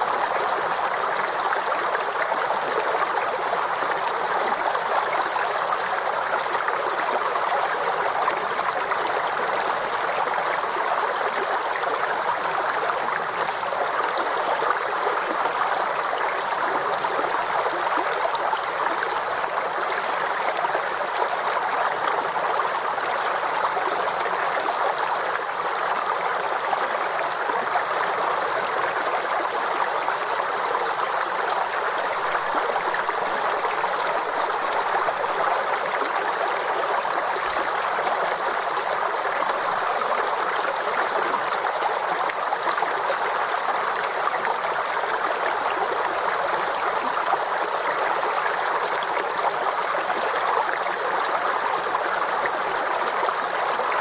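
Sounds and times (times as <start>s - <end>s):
stream flowing over rocks: 0.0s - 54.0s.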